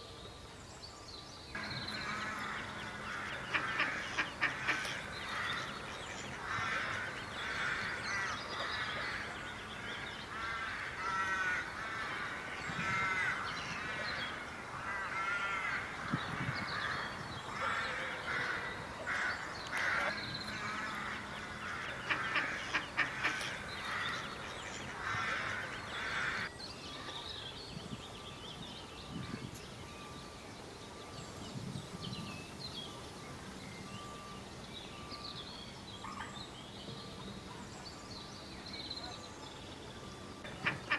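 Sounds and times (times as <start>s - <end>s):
faint steady tone: 1.5s - 14.9s, 29.0s - 40.9s
ducks quacking: 1.6s - 16.0s, 16.8s - 26.5s, 40.5s - 40.9s.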